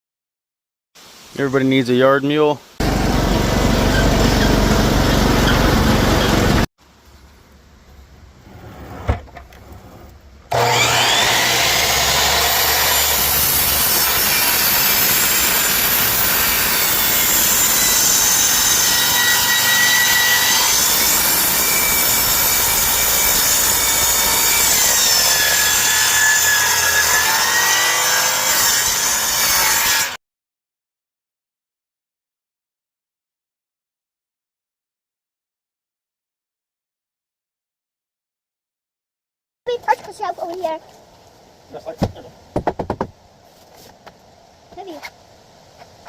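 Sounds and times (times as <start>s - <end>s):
power saw cutting wood: 2.8s - 6.7s, 10.5s - 30.2s.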